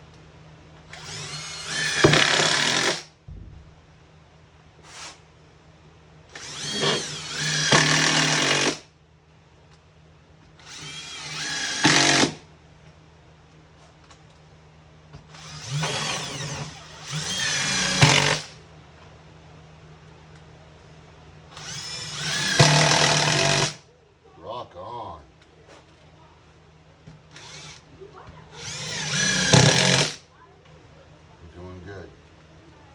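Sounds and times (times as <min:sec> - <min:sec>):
power drill driving screws: 0:00.9 - 0:03.1, 0:06.3 - 0:08.9, 0:10.6 - 0:12.4, 0:15.3 - 0:18.6, 0:21.6 - 0:23.8, 0:27.3 - 0:27.8, 0:28.6 - 0:30.2.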